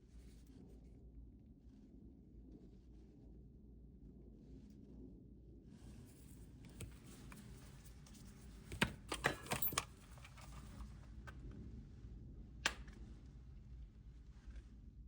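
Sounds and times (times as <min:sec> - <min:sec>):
low steady hum: 0:00.0 - 0:15.0
light clicks and clinks: 0:09.1 - 0:10.9.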